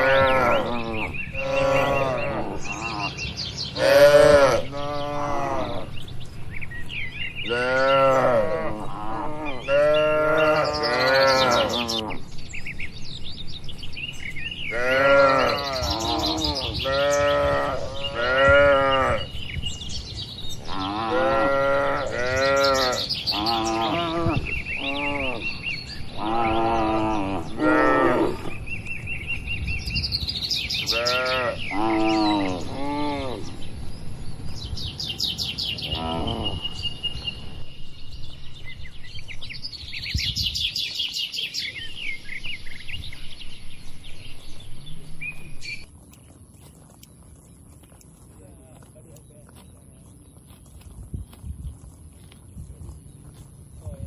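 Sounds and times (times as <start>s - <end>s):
cattle mooing: 0.0s - 3.2s, 3.8s - 5.9s, 7.5s - 12.2s, 14.7s - 19.3s, 20.6s - 28.6s, 30.9s - 33.5s, 35.9s - 36.7s.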